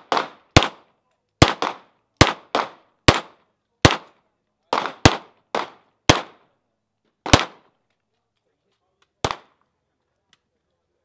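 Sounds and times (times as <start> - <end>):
pistol shots: 0.0 - 6.5, 7.2 - 7.7, 9.2 - 9.6.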